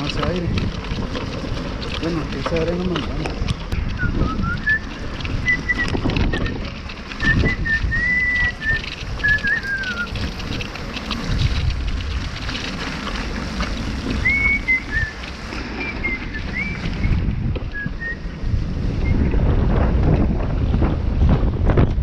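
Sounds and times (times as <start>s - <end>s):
wind rumbling on microphone: 0.0s - 22.0s
person whistling: 3.9s - 6.0s, 7.2s - 10.2s, 14.2s - 15.2s, 15.8s - 18.4s.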